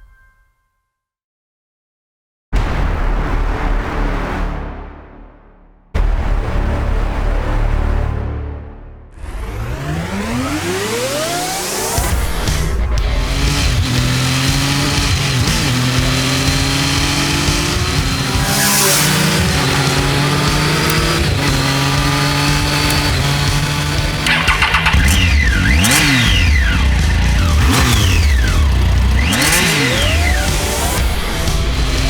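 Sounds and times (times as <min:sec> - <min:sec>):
motorcycle engine revving: 0:09.2 - 0:32.0.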